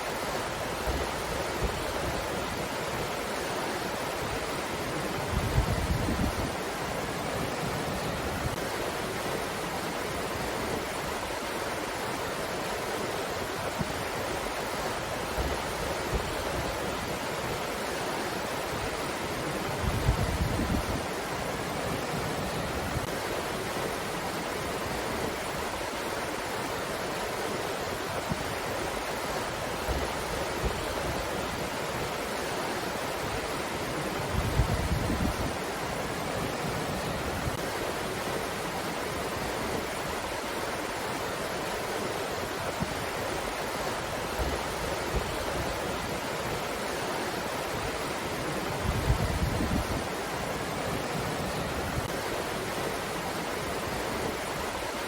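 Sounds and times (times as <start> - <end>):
low rumbling wind gusts: 4.0 - 17.8, 18.6 - 24.0, 33.2 - 40.6, 47.5 - 55.0.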